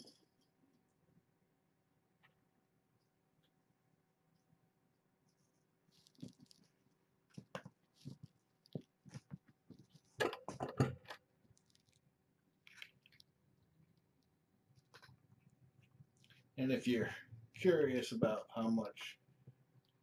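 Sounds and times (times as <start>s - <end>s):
kitten chewing and biting: 11.4s - 16.4s.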